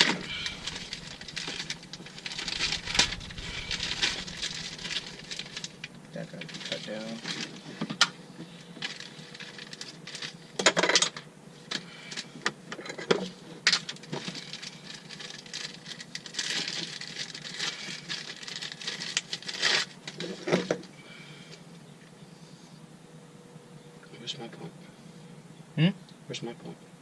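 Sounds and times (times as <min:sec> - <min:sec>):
scraping and rustling: 0:00.0 - 0:10.4.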